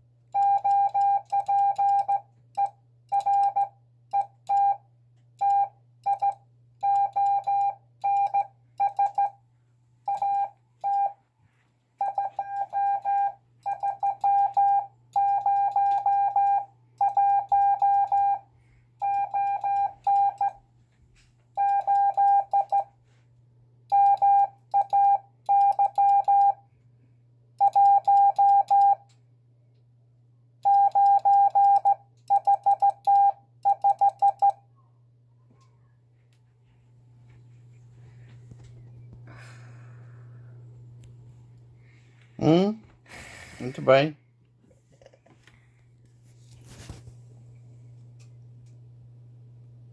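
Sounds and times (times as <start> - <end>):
morse code beeps: 0.4 - 4.8, 5.4 - 9.4, 10.1 - 11.2, 12.0 - 20.6, 21.6 - 22.9, 23.9 - 26.6, 27.6 - 29.0, 30.6 - 34.6.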